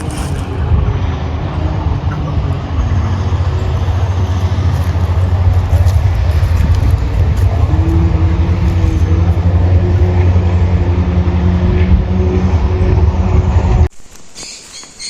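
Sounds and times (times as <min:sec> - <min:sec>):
motor rumbling: 0:00.0 - 0:13.9.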